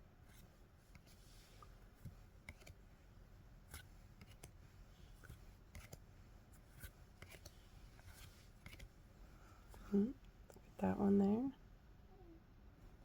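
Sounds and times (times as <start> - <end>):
trading cards being flipped through: 0.3 - 2.8, 3.6 - 6.0, 6.6 - 8.9.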